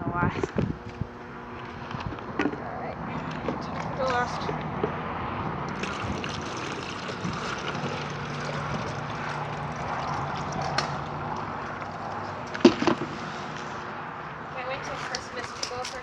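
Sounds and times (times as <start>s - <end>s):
low hum: 0.0s - 16.0s
toilet flushing: 5.7s - 12.3s.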